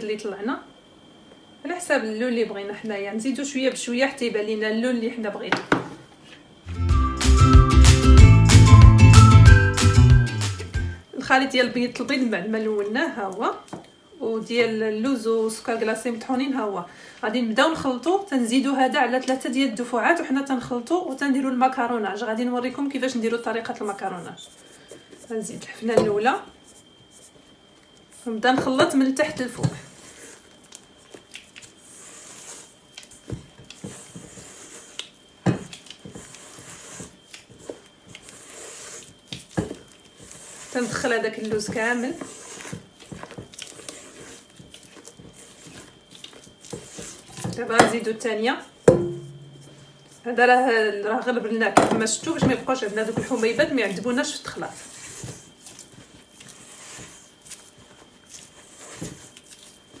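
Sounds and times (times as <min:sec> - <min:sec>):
spatula folding batter: 0:23.7 - 1:00.0.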